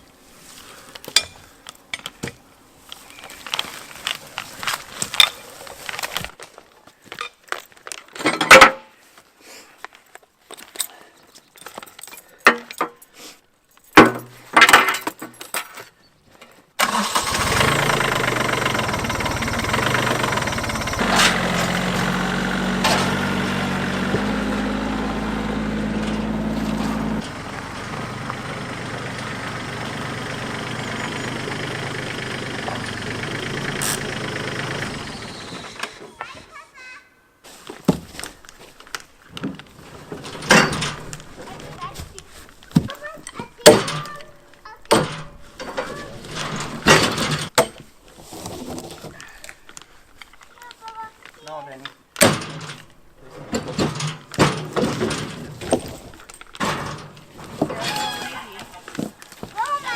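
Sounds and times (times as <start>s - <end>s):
engine running: 16.8s - 36.0s.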